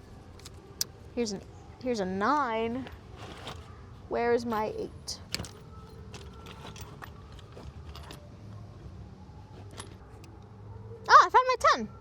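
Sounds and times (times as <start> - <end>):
metal sockets clinking: 4.6 - 8.4, 9.6 - 10.4.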